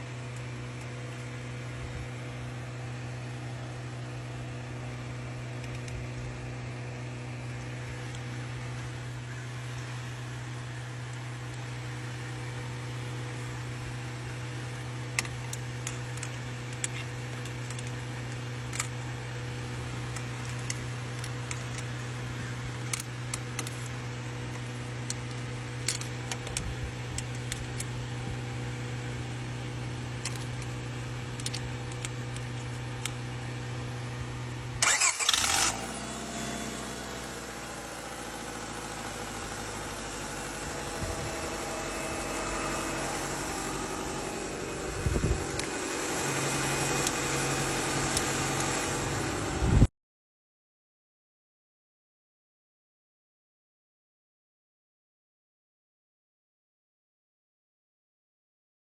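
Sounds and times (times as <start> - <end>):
car engine idling: 0.0 - 49.8
steady low hum: 0.0 - 49.9
car engine cranking and starting: 7.2 - 49.9.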